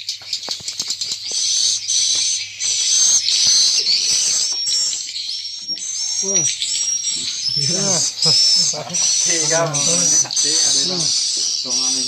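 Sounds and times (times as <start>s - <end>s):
swiftlets twittering: 0.0s - 12.0s
rapid bird clicking: 0.1s - 2.4s.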